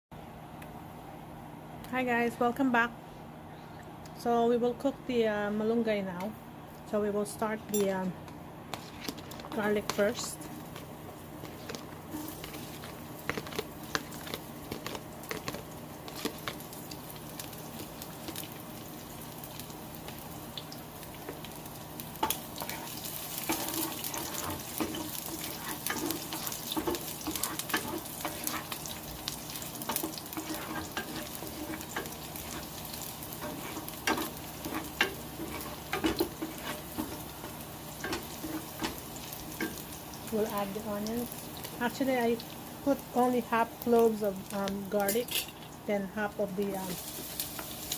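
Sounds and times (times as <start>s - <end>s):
spatula scraping and tapping pan: 8.7s - 16.6s, 22.2s - 28.9s, 29.8s - 32.8s, 33.4s - 39.0s
garlic sizzling in oil: 8.7s - 47.9s.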